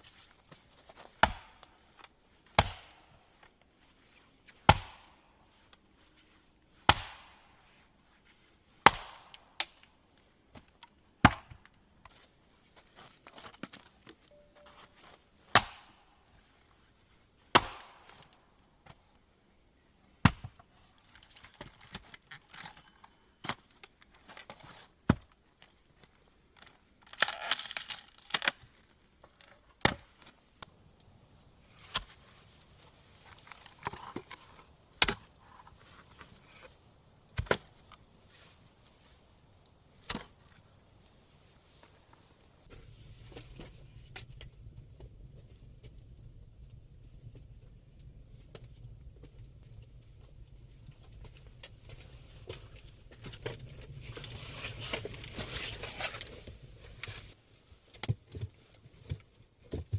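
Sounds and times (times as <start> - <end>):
axe chopping wood: 1.2 - 1.6, 2.6 - 3.0, 4.7 - 5.2, 6.9 - 7.4, 8.8 - 9.7, 11.2 - 11.6, 15.5 - 16.0, 17.5 - 18.3, 20.3 - 20.6
rustling: 20.8 - 30.6, 49.2 - 57.4.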